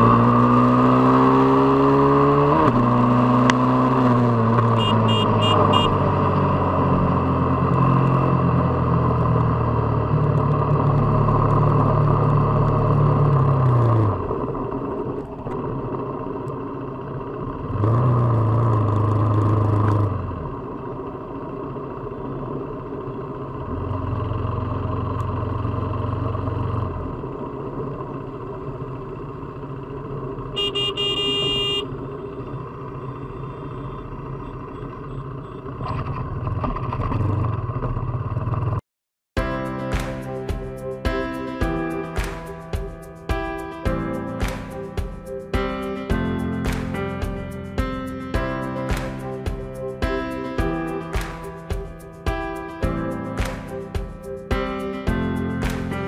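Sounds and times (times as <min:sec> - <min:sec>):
motorcycle engine accelerating: 0:00.0 - 0:38.8.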